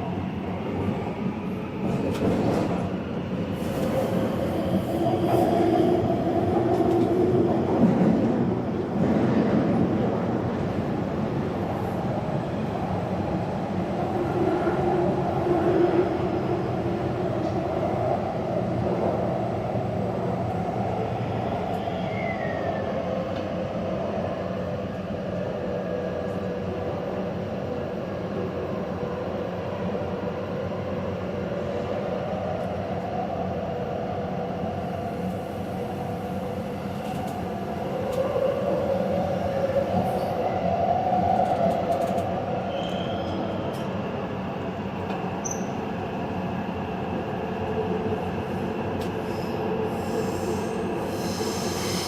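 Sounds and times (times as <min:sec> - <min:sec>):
train wheel-on-rail rumble: 0:00.0 - 0:52.0
train wheel squeal: 0:42.6 - 0:43.9, 0:45.4 - 0:45.8, 0:49.3 - 0:52.0.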